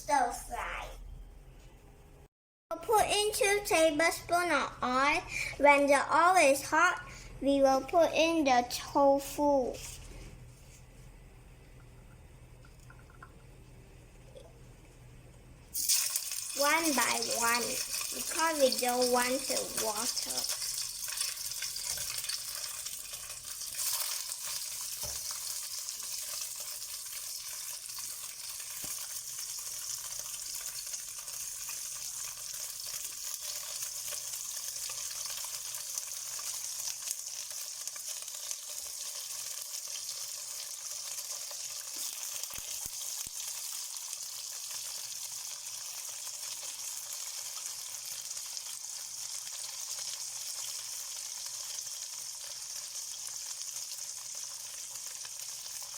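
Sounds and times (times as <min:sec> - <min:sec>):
tofu sizzling in hot oil: 0:15.7 - 0:55.9.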